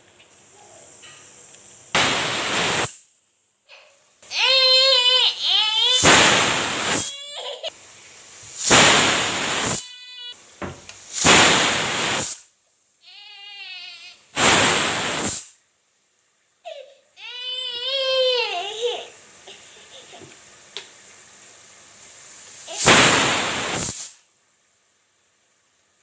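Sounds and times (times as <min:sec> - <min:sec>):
pressure cooker whistle hissing: 0:02.0 - 0:03.0, 0:05.8 - 0:07.4, 0:08.6 - 0:10.4, 0:11.1 - 0:12.4, 0:14.4 - 0:15.6, 0:22.6 - 0:24.2.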